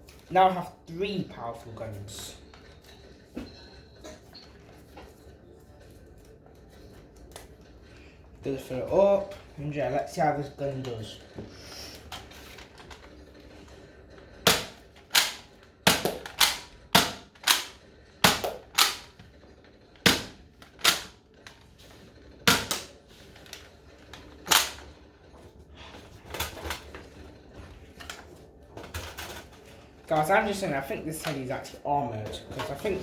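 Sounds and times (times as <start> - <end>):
toy blaster firing foam darts: 14.5 - 19.1.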